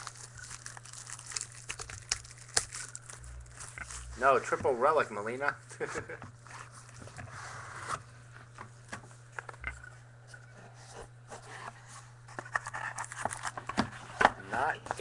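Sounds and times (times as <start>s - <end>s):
wrapper rustling: 0.0s - 5.0s, 12.5s - 13.6s
low electrical hum: 0.0s - 15.0s
cards clicking and scraping: 11.3s - 15.0s.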